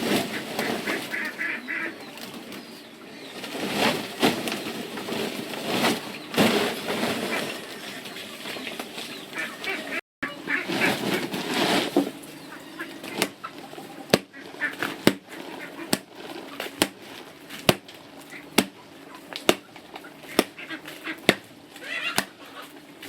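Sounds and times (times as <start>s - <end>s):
farm fowl honking: 0.1s - 2.2s, 7.1s - 11.4s, 12.2s - 16.8s, 18.2s - 22.9s
steady chopping blows: 14.1s - 21.6s.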